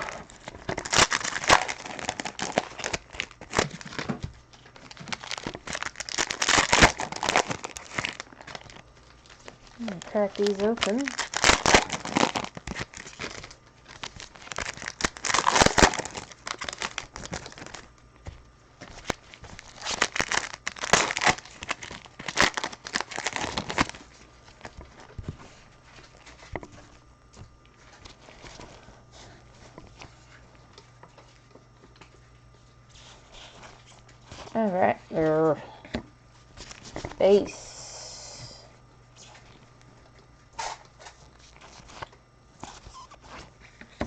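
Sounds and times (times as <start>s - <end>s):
card wrappers tearing and crinkling: 0.0s - 27.0s, 27.8s - 30.4s, 36.5s - 37.2s, 40.5s - 44.0s.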